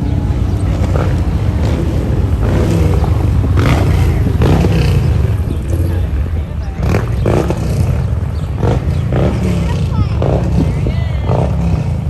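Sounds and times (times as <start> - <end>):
biplane engine droning: 0.2 - 8.6.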